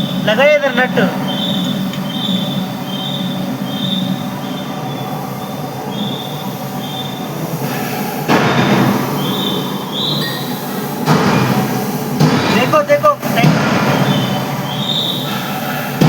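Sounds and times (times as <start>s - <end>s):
industrial machinery hum: 0.0s - 16.0s
rushing noise: 0.0s - 16.0s
short high-pitched squeals: 1.0s - 8.2s, 9.2s - 11.0s.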